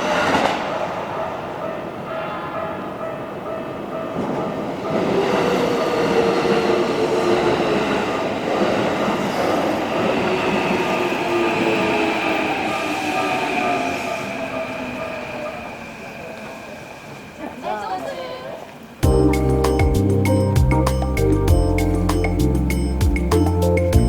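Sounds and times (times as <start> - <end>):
level crossing warning bell: 19.0 - 24.0.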